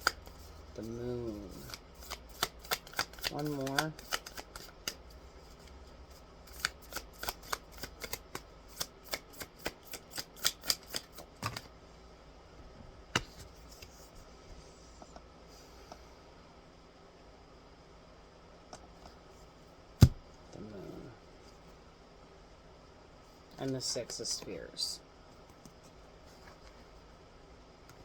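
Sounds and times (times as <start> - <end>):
cards being shuffled: 0.0 - 5.7, 6.5 - 11.7, 13.2 - 14.2.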